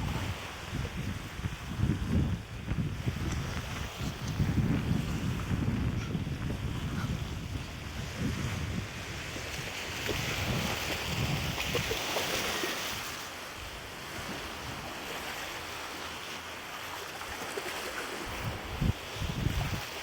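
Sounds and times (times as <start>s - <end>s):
wind rushing: 0.0s - 9.4s
wind buffeting microphone: 0.0s - 15.0s, 18.1s - 20.0s.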